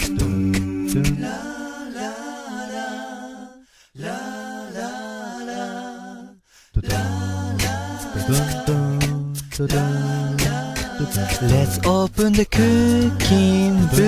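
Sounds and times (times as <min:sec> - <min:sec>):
beat with sharp percussive hits: 0:00.0 - 0:01.6, 0:06.8 - 0:14.0
wordless sung vocal: 0:00.0 - 0:14.0
sustained low notes: 0:06.8 - 0:14.0.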